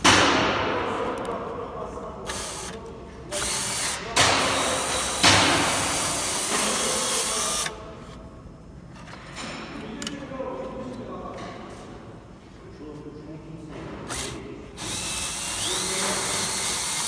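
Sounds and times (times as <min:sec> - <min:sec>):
cable stripping machine running: 0:14.1 - 0:17.0.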